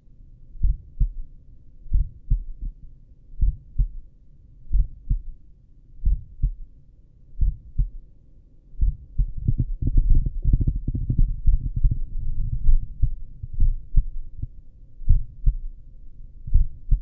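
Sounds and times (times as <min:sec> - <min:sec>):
heartbeat through stethoscope: 0:00.6 - 0:01.2, 0:01.9 - 0:02.8, 0:03.4 - 0:04.0, 0:04.7 - 0:05.4, 0:06.0 - 0:06.7, 0:07.4 - 0:08.0, 0:08.8 - 0:15.8, 0:16.5 - 0:17.0.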